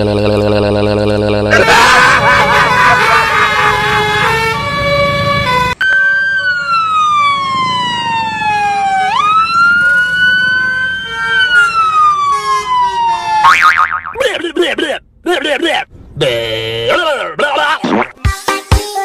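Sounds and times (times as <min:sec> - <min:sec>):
siren wailing: 0:00.4 - 0:13.8.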